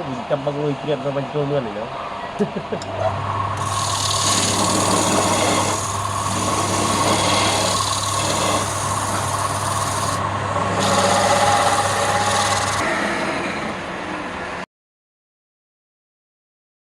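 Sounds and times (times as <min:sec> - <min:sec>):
rough scraping of wood: 0:03.6 - 0:13.7
wood lathe motor hum: 0:03.6 - 0:13.9.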